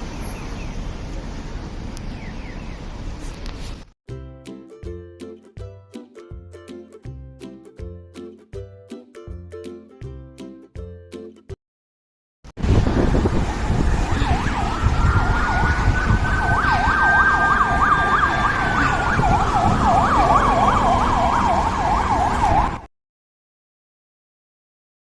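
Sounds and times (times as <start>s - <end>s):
siren rising and falling tone: 13.1s - 22.9s
siren yelp: 13.3s - 22.9s.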